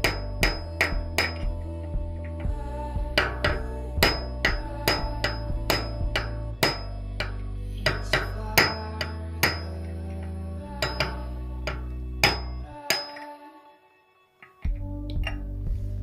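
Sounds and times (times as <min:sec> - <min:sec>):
metal-on-metal strikes ringing: 0:00.0 - 0:01.5, 0:03.2 - 0:09.9, 0:10.8 - 0:13.3.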